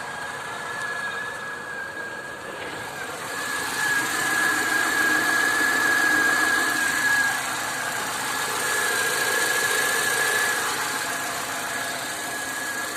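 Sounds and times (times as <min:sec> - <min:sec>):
high-pitched whistle: 0:00.0 - 0:07.7
car engine running: 0:00.0 - 0:12.9.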